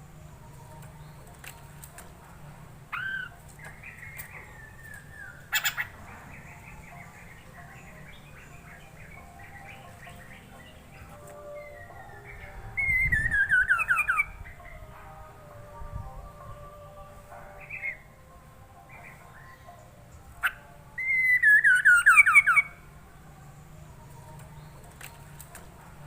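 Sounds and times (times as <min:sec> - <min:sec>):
bird calls and twittering: 0:00.0 - 0:15.2, 0:15.9 - 0:26.0.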